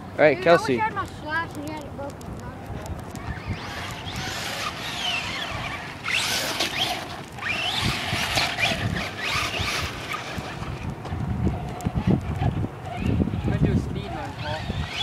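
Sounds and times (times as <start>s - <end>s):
electric toy motor whining: 3.0s - 15.0s.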